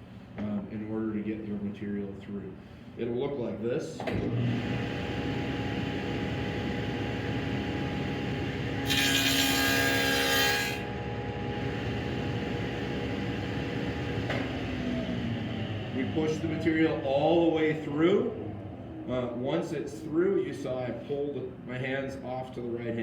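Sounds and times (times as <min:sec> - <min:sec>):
table saw humming: 0:06.1 - 0:14.1
saw blade cutting wood: 0:08.8 - 0:10.8.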